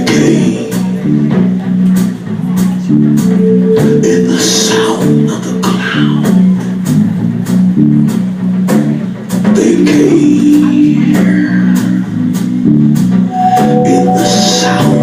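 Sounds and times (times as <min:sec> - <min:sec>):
bass guitar line: 0:00.0 - 0:15.0
guitar: 0:00.0 - 0:15.0
steady drum beat: 0:00.0 - 0:15.0.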